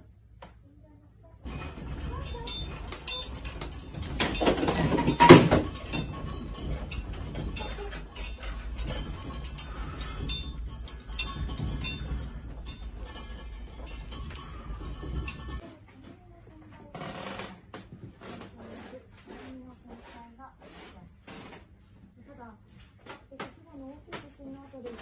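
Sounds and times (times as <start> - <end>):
loose objects rattling and clinking: 1.4 - 15.6.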